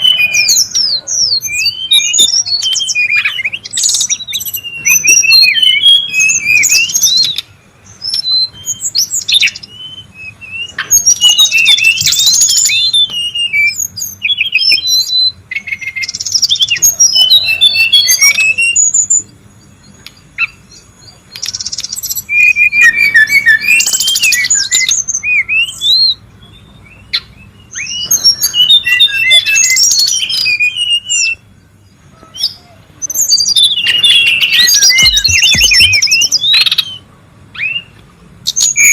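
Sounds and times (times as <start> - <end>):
bird chattering and whistling: 0.0 - 38.9.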